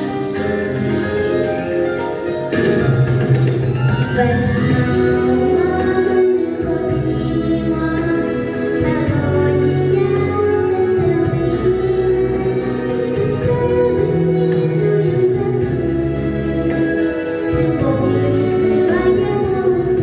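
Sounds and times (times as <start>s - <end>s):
backing track with steady beat: 0.0s - 20.0s
girl singing: 4.2s - 20.0s.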